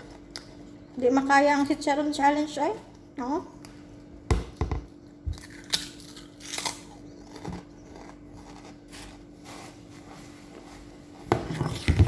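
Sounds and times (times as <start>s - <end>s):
pork rinds crunching while chewed: 5.3s - 9.3s.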